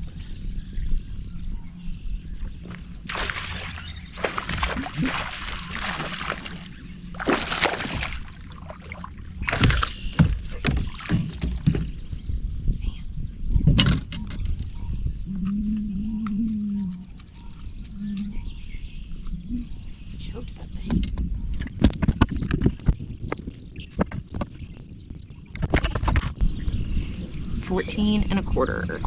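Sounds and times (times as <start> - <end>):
water splashing against kayak: 2.7 - 12.1.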